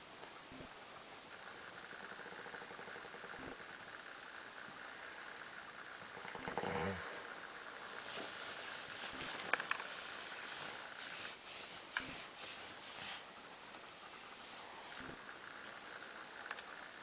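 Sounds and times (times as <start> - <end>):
man snoring: 6.2 - 7.3.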